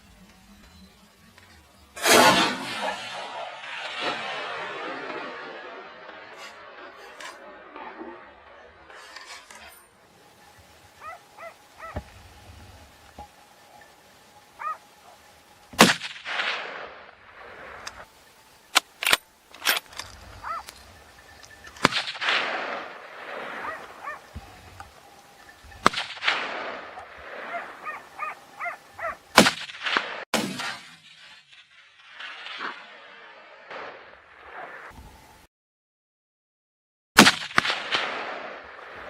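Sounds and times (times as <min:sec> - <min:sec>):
echoing gunshots: 0:02.0 - 0:12.1, 0:13.2 - 0:20.7, 0:21.7 - 0:31.1, 0:37.2 - 0:39.0
dogs yelping: 0:11.0 - 0:12.1, 0:14.6 - 0:15.2, 0:20.4 - 0:20.8, 0:23.6 - 0:24.3, 0:27.4 - 0:29.3.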